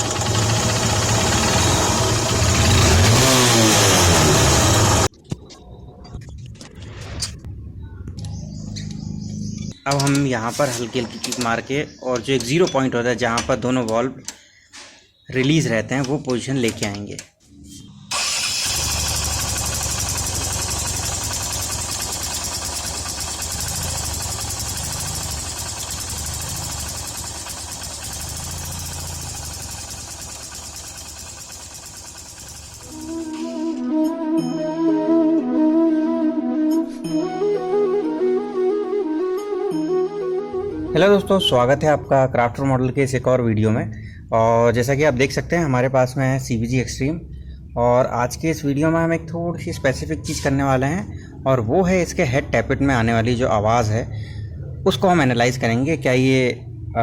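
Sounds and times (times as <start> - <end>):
motorcycle engine idling: 0.0 - 5.1, 18.1 - 33.4.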